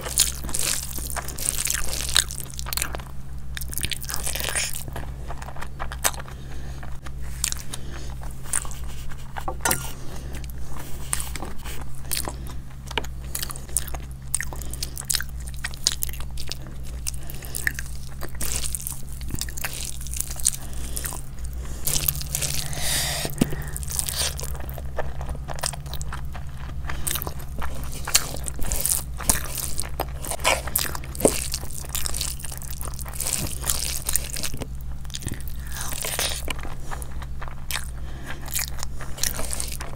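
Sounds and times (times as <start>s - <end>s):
person crunching and chewing food: 0.0s - 39.9s
low hum: 9.4s - 11.5s, 16.1s - 32.8s.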